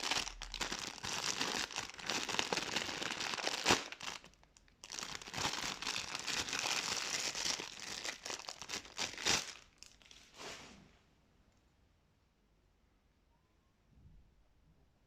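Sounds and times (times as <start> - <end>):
packaging wrap crackling: 0.0 - 10.3.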